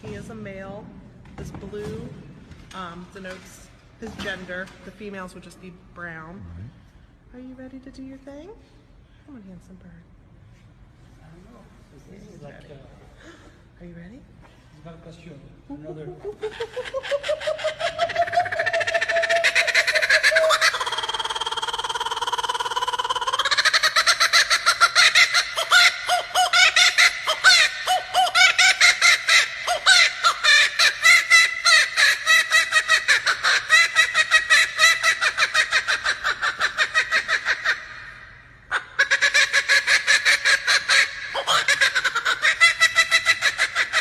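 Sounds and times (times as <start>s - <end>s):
kookaburra cackling call: 16.4s - 44.0s.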